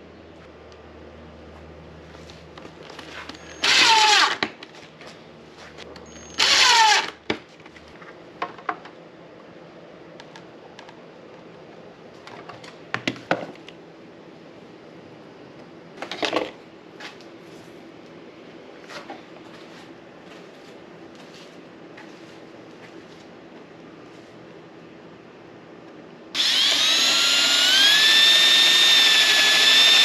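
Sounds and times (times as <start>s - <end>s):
drill boring holes: 3.5s - 4.4s, 6.1s - 7.2s, 26.4s - 30.0s.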